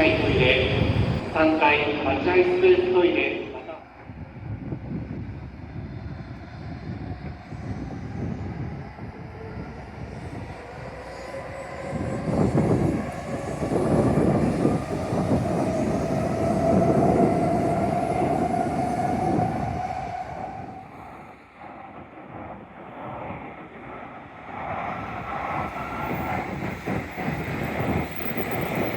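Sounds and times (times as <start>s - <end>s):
railcar whine: 0.0s - 28.9s
railcar wheels clattering on rails: 21.6s - 28.9s.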